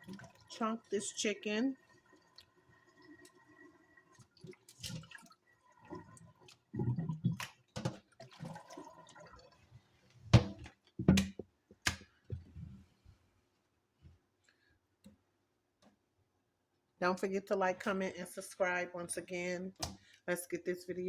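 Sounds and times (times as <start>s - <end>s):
water dripping: 0.0s - 10.2s.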